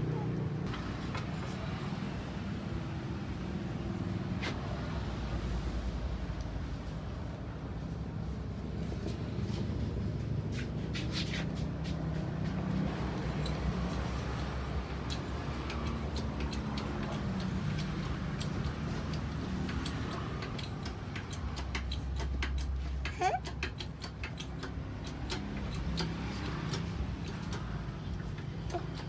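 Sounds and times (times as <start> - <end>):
light ticks and clicks: 13.1 - 29.0.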